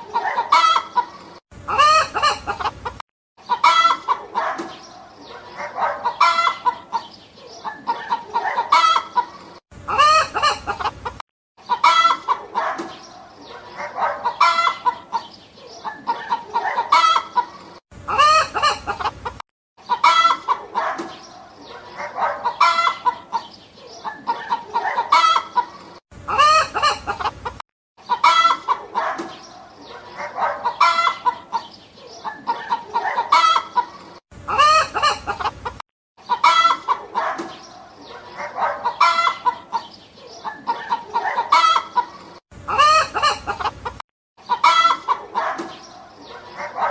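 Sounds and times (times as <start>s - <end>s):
chickens clucking: 0.0s - 46.9s.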